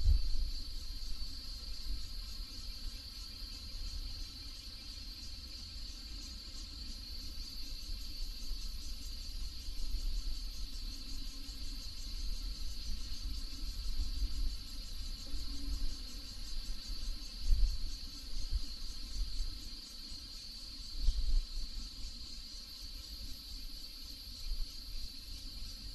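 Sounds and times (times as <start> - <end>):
insects trilling: 0.0 - 25.9.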